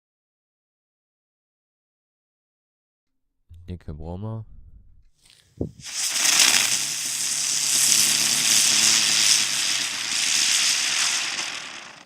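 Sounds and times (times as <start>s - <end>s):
ground spinner firework hissing: 5.7s - 12.0s.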